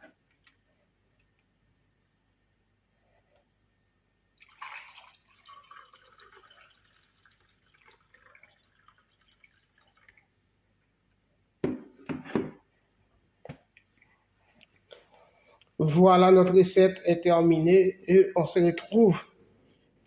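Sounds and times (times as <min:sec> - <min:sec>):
liquid pouring into container: 0:04.3 - 0:10.4
object set down knocks: 0:11.6 - 0:12.6.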